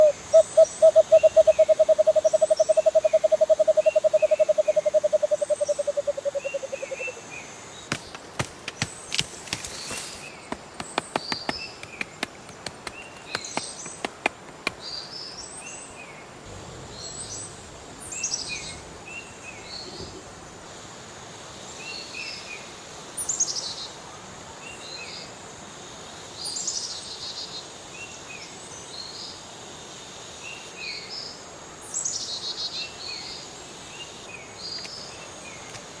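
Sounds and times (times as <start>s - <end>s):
small birds chirping: 0.0s - 7.2s, 7.8s - 15.8s.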